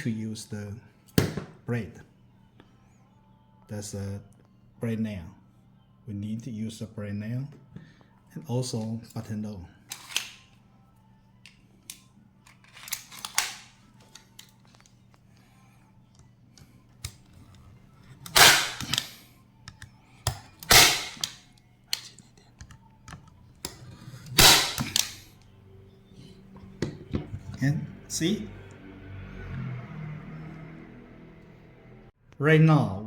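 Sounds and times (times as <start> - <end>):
staple gun firing sharp snaps: 18.2 - 19.2, 20.3 - 22.1, 24.4 - 25.3.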